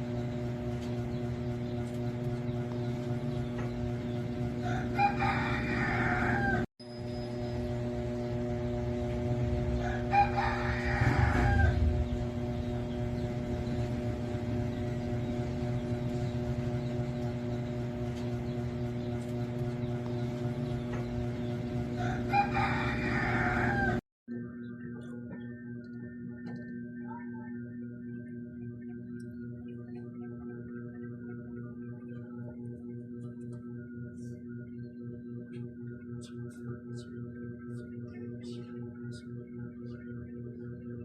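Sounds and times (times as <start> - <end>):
steady low hum: 0.0 - 41.0
rooster crowing: 4.6 - 6.7, 9.6 - 13.0, 21.8 - 24.0.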